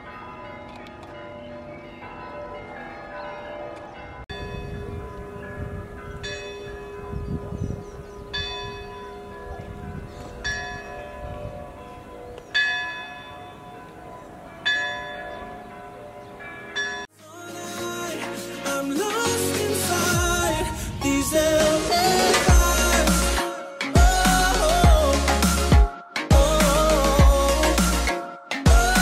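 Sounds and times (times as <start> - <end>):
church bell tolling: 0.0 - 17.1.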